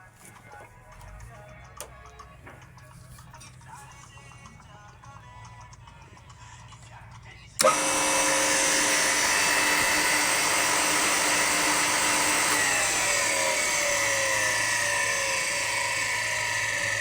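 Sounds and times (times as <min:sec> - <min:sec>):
compressor motor whining: 0:07.6 - 0:17.0.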